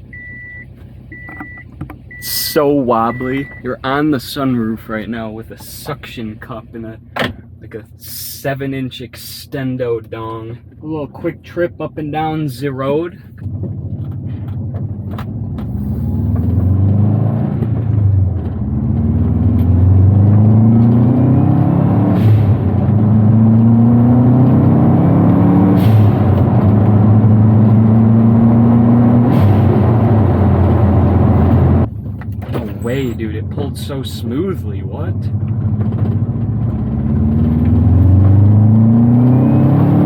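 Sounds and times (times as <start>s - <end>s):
car engine accelerating: 13.3s - 40.0s.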